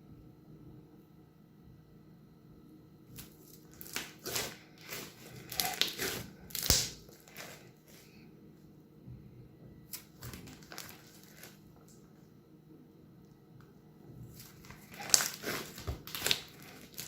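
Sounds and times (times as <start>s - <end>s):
slime crackling crunches: 3.2s - 8.0s, 9.9s - 12.0s, 14.3s - 17.0s
sharp snap: 6.6s - 7.0s.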